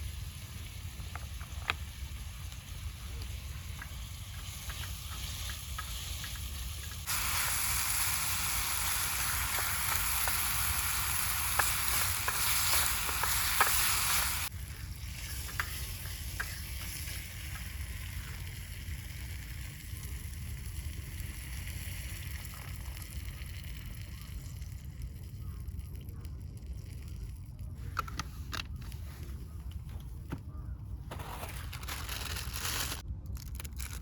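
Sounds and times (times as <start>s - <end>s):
food sizzling in hot oil: 1.8s - 22.6s.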